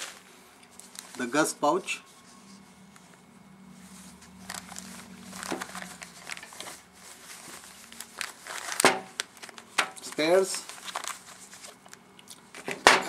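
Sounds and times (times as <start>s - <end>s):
pouch packaging rustling and clicking: 0.0s - 1.3s, 4.3s - 12.9s
faint steady hum: 0.0s - 13.0s.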